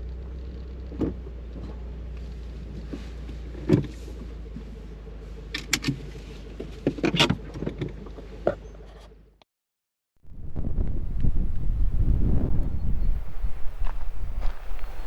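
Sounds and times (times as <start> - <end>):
car engine low hum: 0.0 - 9.4, 10.2 - 15.0.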